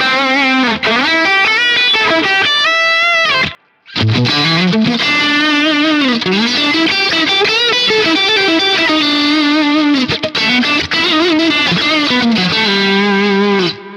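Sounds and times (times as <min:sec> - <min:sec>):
distorted electric guitar lead: 0:00.0 - 0:13.9.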